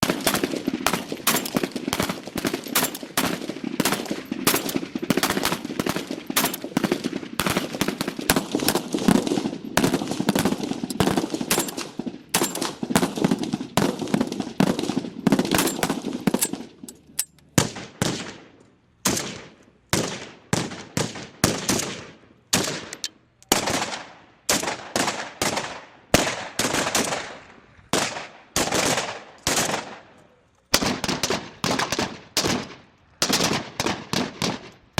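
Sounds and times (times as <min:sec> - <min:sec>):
rapid gunfire: 0:00.0 - 0:16.7.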